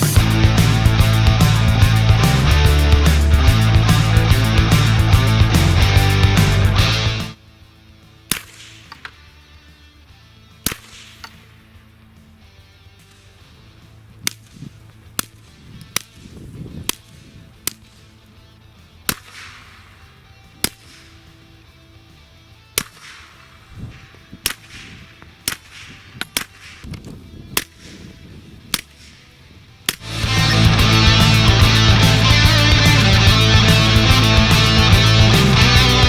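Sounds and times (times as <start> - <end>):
pistol shots: 8.3 - 9.3, 10.6 - 11.8, 19.1 - 21.6, 22.7 - 27.0.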